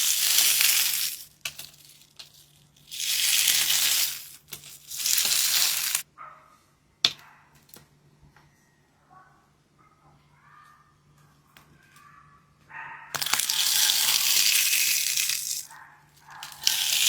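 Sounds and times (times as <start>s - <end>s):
water beads crunching: 0.0s - 6.0s, 13.2s - 17.0s.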